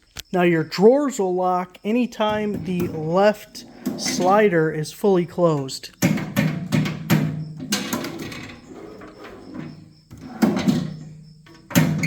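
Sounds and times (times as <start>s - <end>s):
metal tool cart drawers clunking: 2.2s - 4.6s, 5.3s - 12.0s.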